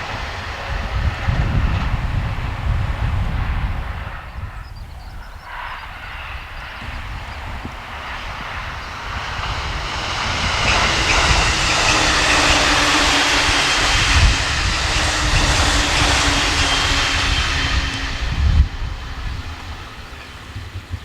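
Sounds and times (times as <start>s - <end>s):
electric train passing: 0.0s - 21.0s.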